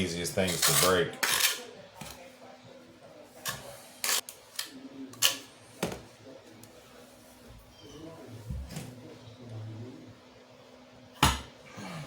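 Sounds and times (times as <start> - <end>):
metal tool scraping mortar: 0.4 - 1.6.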